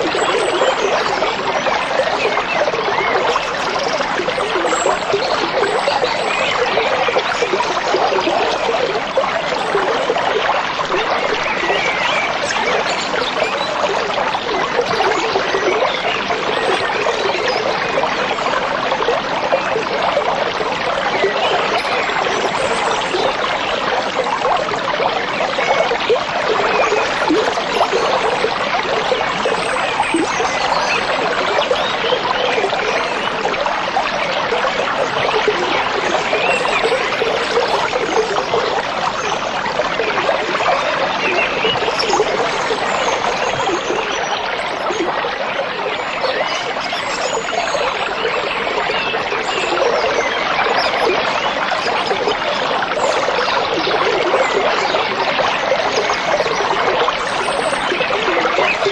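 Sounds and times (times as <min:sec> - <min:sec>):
stream babbling over stones: 0:00.0 - 0:58.9.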